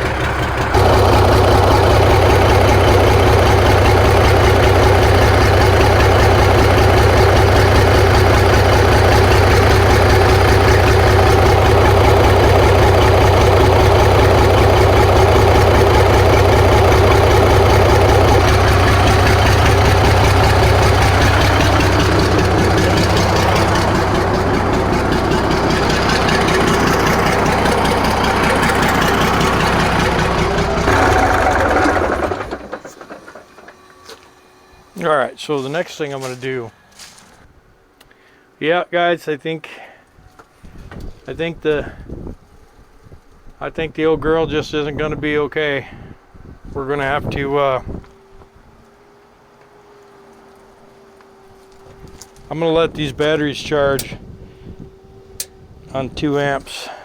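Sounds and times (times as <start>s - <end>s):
diesel engine idling: 0.0s - 37.1s.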